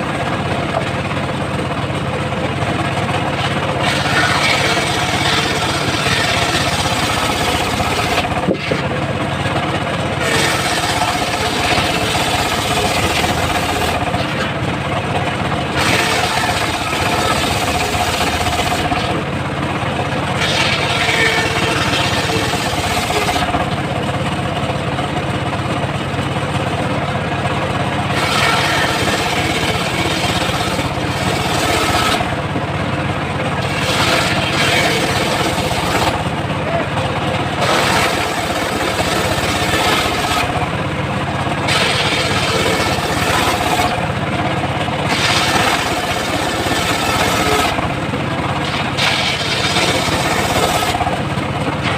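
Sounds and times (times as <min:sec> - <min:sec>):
saw engine running: 0:00.0 - 0:51.9
saw blade cutting wood: 0:03.0 - 0:14.7, 0:15.6 - 0:19.3, 0:20.3 - 0:23.8, 0:28.1 - 0:32.4, 0:33.6 - 0:40.7, 0:41.6 - 0:44.2, 0:44.8 - 0:48.0, 0:48.6 - 0:51.9.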